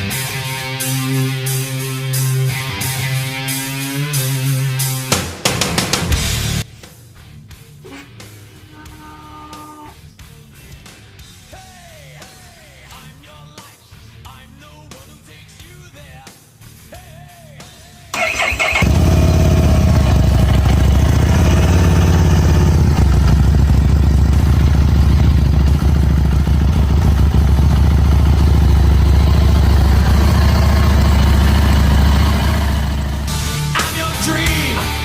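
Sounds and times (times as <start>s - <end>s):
motorcycle starter cranking: 18.2s - 33.9s
motorcycle engine idling loudly: 18.2s - 35.0s.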